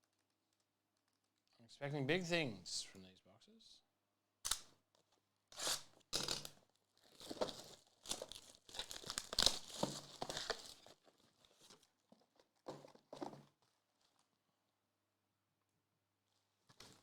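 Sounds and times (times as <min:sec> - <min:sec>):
plastic wrapping torn and crinkled: 0:06.2 - 0:11.8.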